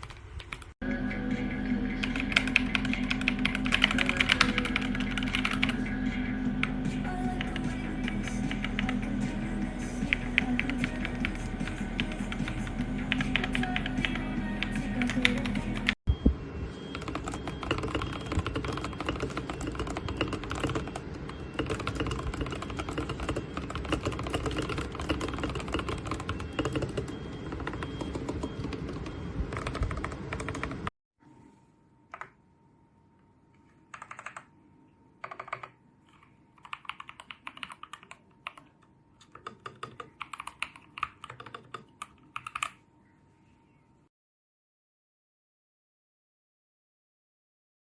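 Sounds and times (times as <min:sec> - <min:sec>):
mechanical keyboard typing: 0:02.1 - 0:05.8, 0:16.9 - 0:30.9, 0:33.9 - 0:34.5, 0:35.2 - 0:42.8.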